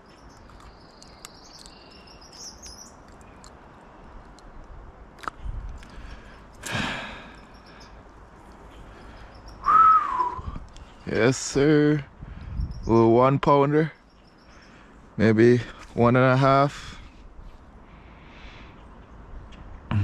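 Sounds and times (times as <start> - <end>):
small bird twittering: 0.0 - 3.5, 7.2 - 8.0, 8.7 - 10.3, 12.5 - 13.2
steady wind: 0.0 - 20.0
rushing burst of wind: 9.6 - 10.8, 12.1 - 13.0.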